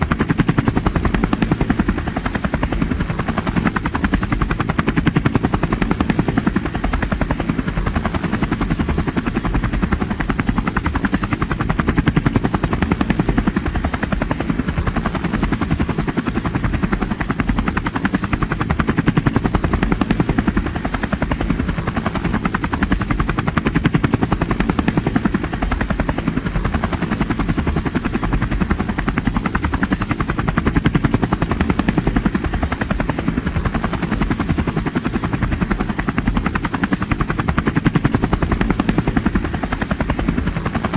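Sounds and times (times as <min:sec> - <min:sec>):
helicopter rotor chopping: 0:00.0 - 0:40.9.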